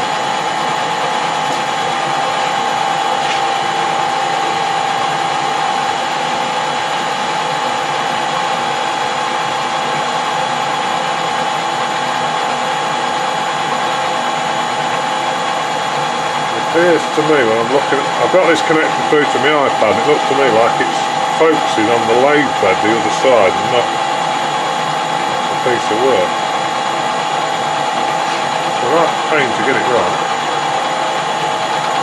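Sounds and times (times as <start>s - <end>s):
metal lathe whining: 0.0s - 32.0s.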